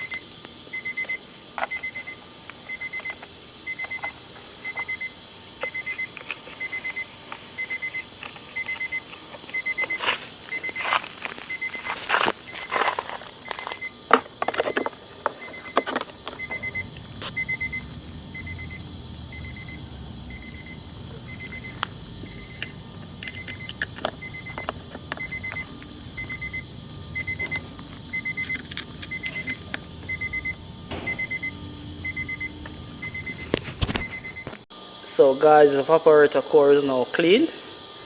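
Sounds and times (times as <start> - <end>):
high whine: 0.0 - 37.1
short electronic beeps: 29.1 - 34.6
low rumble: 30.0 - 33.8
sharp knocks and clatter: 30.9 - 31.9.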